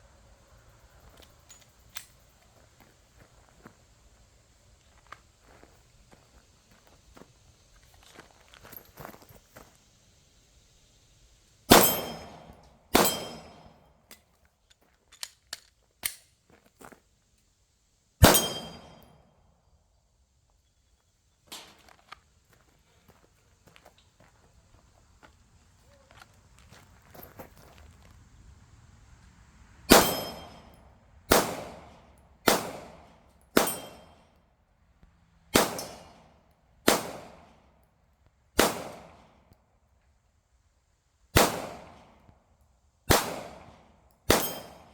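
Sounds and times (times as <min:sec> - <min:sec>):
pistol shots with echo: 0:11.7 - 0:13.8, 0:18.2 - 0:19.1, 0:29.9 - 0:34.2, 0:35.5 - 0:36.2, 0:36.8 - 0:37.5, 0:38.6 - 0:39.3, 0:41.4 - 0:42.1, 0:43.1 - 0:44.9.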